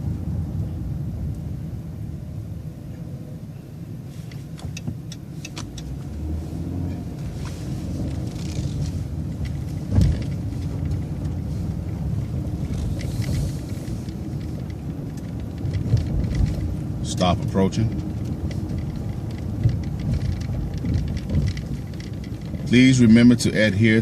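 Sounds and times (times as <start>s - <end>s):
bus engine and road rumble: 0.0s - 24.0s
light rattling clicks: 4.3s - 6.1s, 7.2s - 23.3s.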